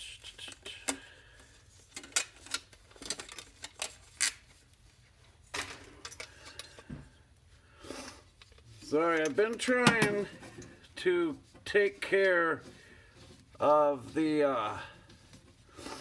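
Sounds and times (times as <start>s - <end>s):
metal parts clinking and clattering: 1.9s - 4.4s, 5.5s - 6.8s.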